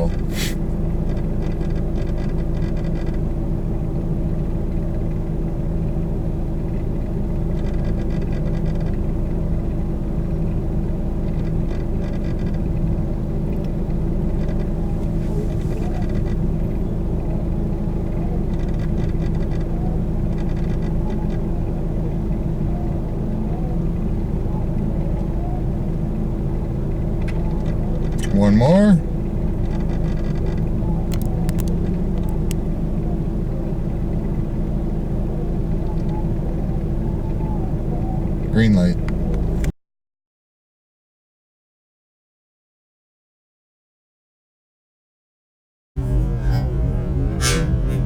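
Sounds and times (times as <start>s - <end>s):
car engine idling: 0.0s - 39.7s, 46.0s - 48.0s.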